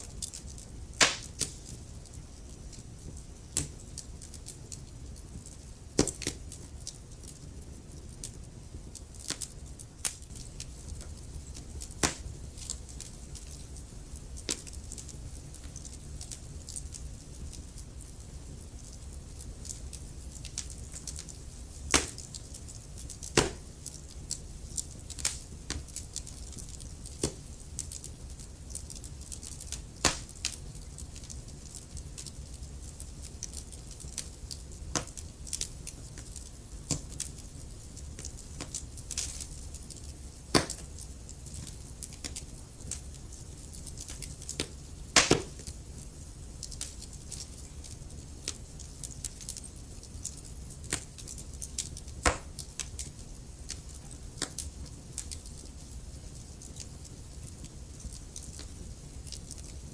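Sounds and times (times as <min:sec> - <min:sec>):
low rumble of flames: 0:00.0 - 0:59.9
wood fire crackling: 0:00.0 - 0:59.9
logs popping and snapping: 0:00.2 - 0:01.7, 0:21.9 - 0:22.3, 0:23.2 - 0:24.0, 0:29.4 - 0:30.6, 0:38.2 - 0:41.0, 0:44.0 - 0:45.8, 0:50.9 - 0:53.1.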